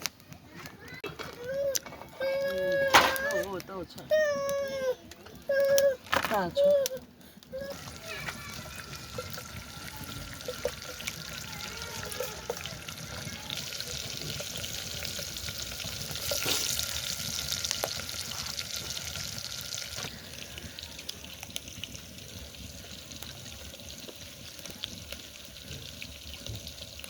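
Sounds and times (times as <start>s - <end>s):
food sizzling in a pot: 7.6s - 27.0s.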